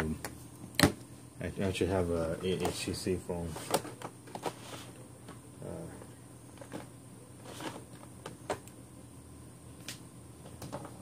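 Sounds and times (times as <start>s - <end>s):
faint background hum: 0.0s - 11.0s.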